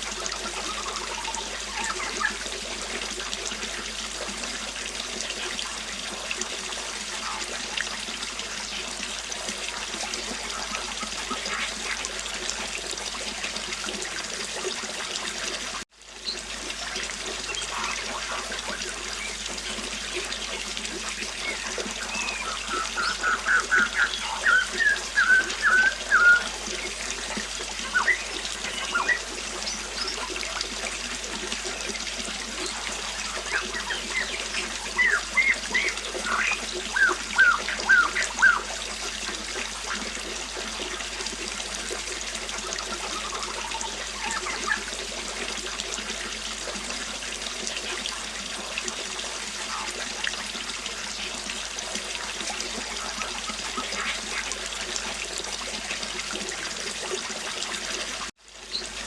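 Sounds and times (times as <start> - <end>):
birds chirping: 17.4 - 19.5, 20.6 - 30.6, 31.6 - 38.8, 42.8 - 44.8.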